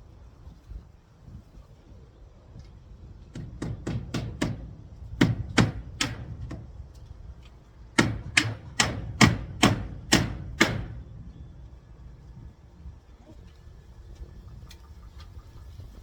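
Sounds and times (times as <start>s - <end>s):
hammer strikes: 8.0s - 11.0s.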